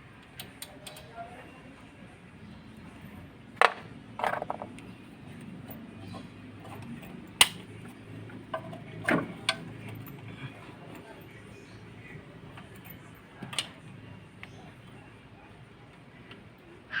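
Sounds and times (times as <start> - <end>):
metal tools clinking and clanking: 5.6 - 11.6.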